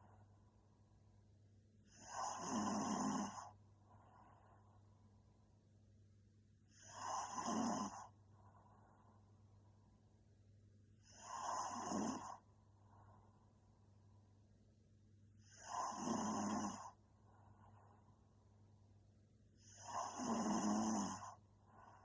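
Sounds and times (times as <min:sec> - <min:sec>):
woman snoring: 0:01.9 - 0:03.6, 0:06.7 - 0:08.1, 0:11.0 - 0:12.4, 0:15.4 - 0:17.0, 0:19.6 - 0:22.0
soft breathing: 0:03.3 - 0:05.5, 0:06.6 - 0:10.3, 0:11.0 - 0:14.4, 0:16.8 - 0:18.6, 0:21.1 - 0:22.0.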